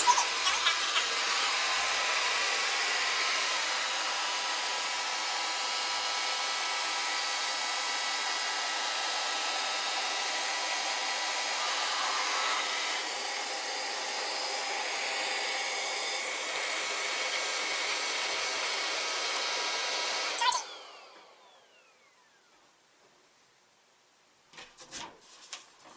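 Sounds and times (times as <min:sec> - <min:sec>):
motor winding down: 0:00.0 - 0:08.1, 0:10.9 - 0:17.2, 0:20.0 - 0:22.5
robot vacuum whirring: 0:00.0 - 0:22.5.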